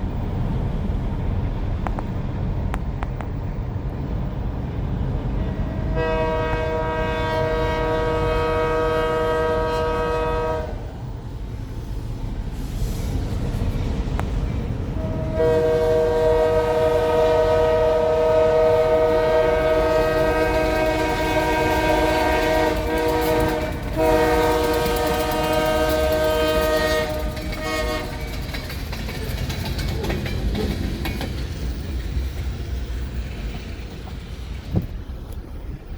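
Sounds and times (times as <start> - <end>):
train rumbling past: 0.0 - 35.9
locomotive horn blasts: 5.4 - 10.9, 15.0 - 28.6.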